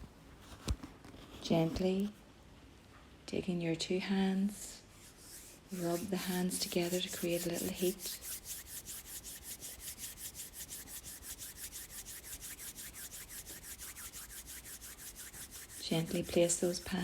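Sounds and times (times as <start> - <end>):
palms rubbing together: 4.9 - 17.0.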